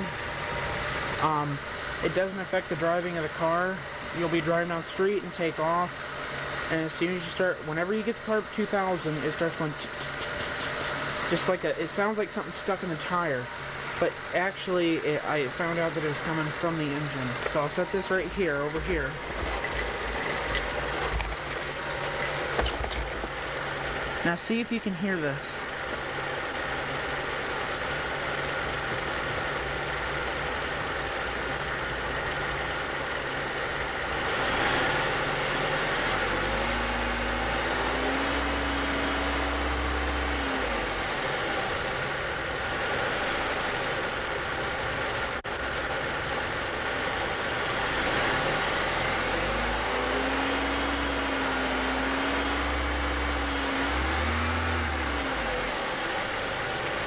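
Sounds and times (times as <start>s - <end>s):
car engine idling: 0.0s - 57.0s
car engine revving: 0.0s - 57.0s.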